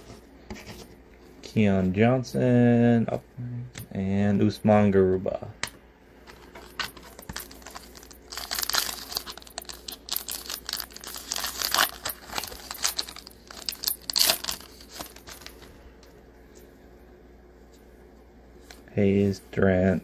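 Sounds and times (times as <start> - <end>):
plastic wrapper crinkling: 6.7 - 15.6.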